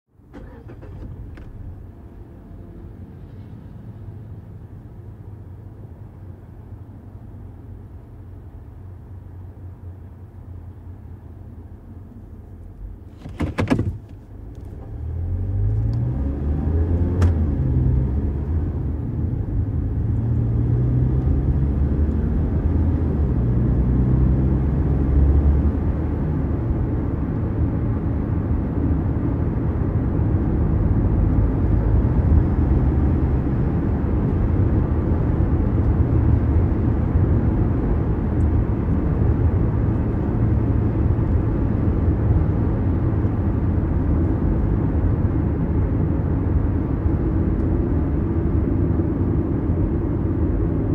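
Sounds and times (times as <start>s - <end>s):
engine starting clatter: 0.3s - 1.7s
car engine running: 12.5s - 15.9s.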